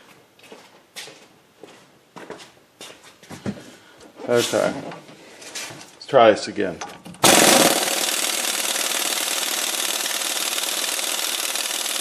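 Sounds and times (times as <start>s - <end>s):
pneumatic impact wrench hammering: 7.1s - 12.0s.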